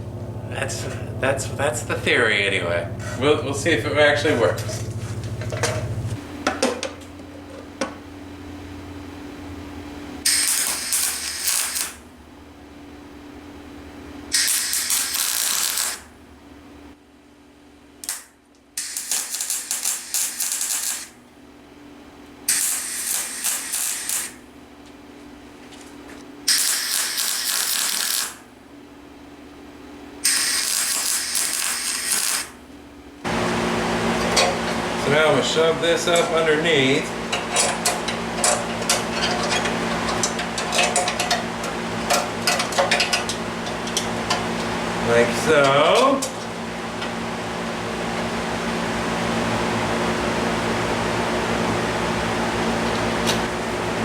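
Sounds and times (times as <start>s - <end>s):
electric welder sizzling crackle: 10.2s - 12.1s, 14.3s - 16.1s, 18.0s - 21.2s, 22.4s - 24.5s, 26.4s - 28.5s, 30.2s - 32.6s.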